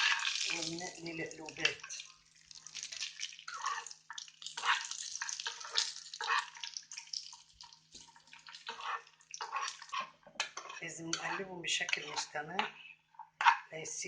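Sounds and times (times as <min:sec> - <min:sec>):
nuts sizzling in oil: 0:00.0 - 0:10.8.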